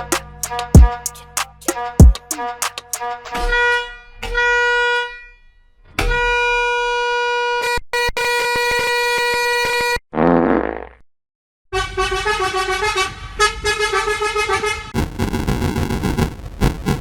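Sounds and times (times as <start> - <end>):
bus air horn: 0.0 - 5.4, 6.0 - 10.0, 11.7 - 15.0.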